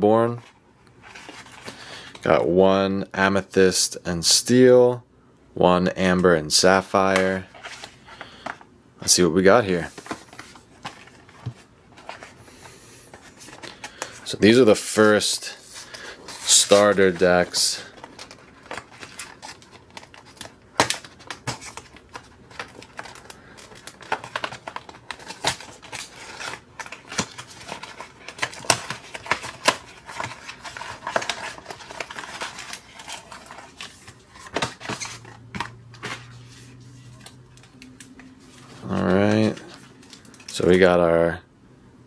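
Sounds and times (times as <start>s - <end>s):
low steady hum: 0.0s - 42.0s
card and packaging crinkling: 9.6s - 40.9s.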